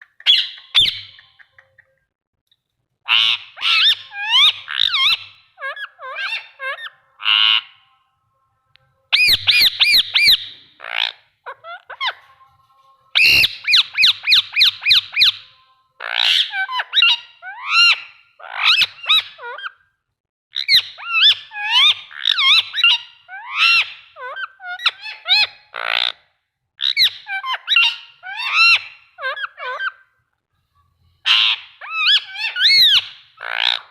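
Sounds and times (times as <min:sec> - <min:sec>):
parrot chirps: 0:00.0 - 0:02.1, 0:03.0 - 0:07.9, 0:09.1 - 0:12.4, 0:13.1 - 0:19.9, 0:20.6 - 0:26.2, 0:26.8 - 0:30.1, 0:31.2 - 0:33.9
parrot squawking and whistling: 0:00.2 - 0:01.6, 0:03.1 - 0:07.8, 0:09.1 - 0:12.2, 0:13.2 - 0:19.7, 0:26.8 - 0:30.0, 0:31.2 - 0:33.9.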